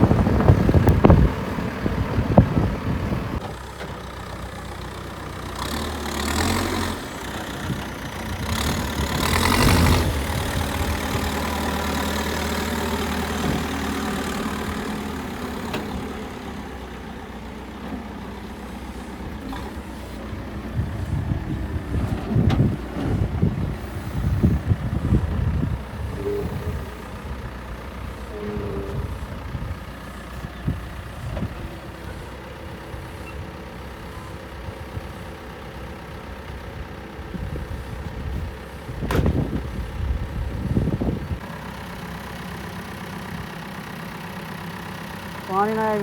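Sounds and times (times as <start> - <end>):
heavy machinery engine rumbling: 0.0 - 46.0.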